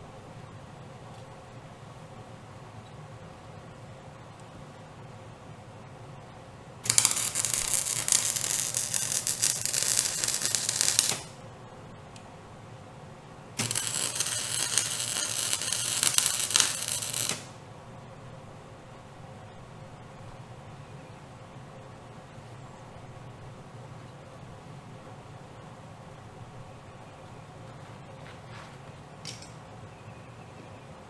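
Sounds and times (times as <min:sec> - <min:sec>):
welder arc crackling: 0:06.9 - 0:11.4, 0:13.6 - 0:17.6.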